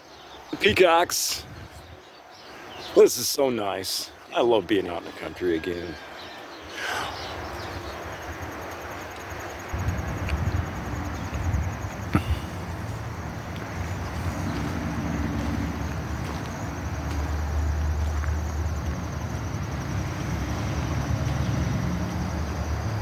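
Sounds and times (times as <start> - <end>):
low engine rumble: 9.7 - 23.0.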